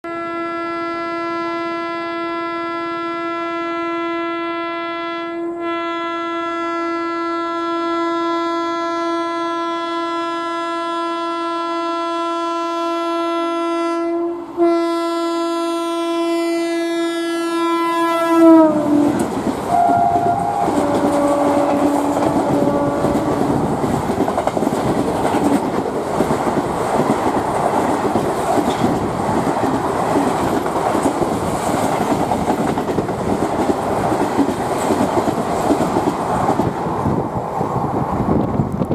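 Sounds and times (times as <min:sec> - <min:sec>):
locomotive horn blast: 0:00.0 - 0:23.6
short low horn notes: 0:00.1 - 0:23.5
train coaches rushing by: 0:18.4 - 0:38.9.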